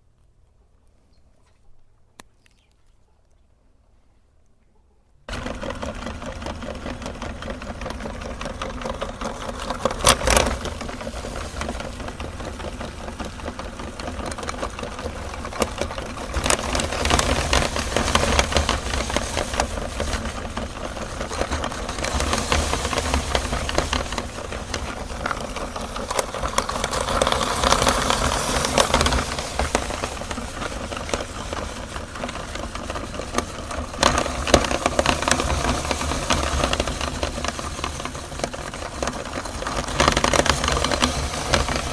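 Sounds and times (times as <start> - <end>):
candy crackling in grinder: 5.3 - 41.9
meat grinder motor humming: 5.3 - 41.9.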